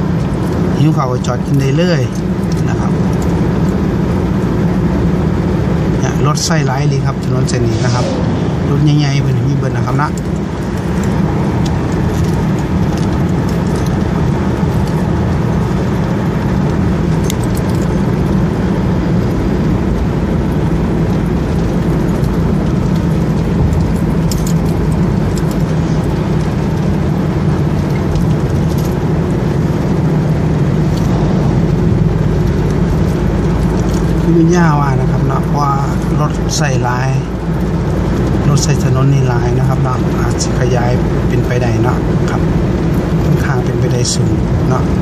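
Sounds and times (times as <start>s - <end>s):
car engine and tyre drone: 0.0s - 45.0s
faint rattles: 6.7s - 38.4s.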